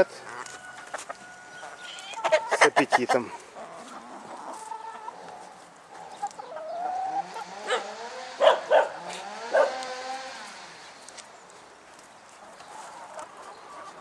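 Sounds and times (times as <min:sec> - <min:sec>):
hens clucking: 0:00.0 - 0:14.0.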